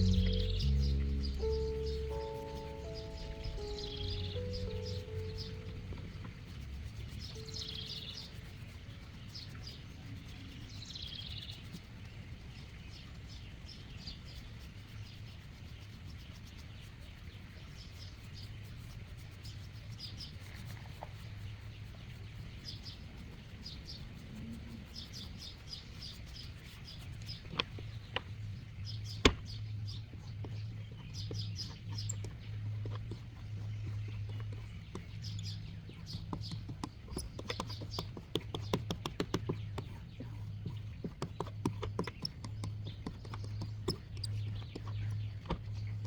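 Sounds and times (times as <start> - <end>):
steady low hum: 0.0 - 9.6
small birds chirping: 0.0 - 46.0.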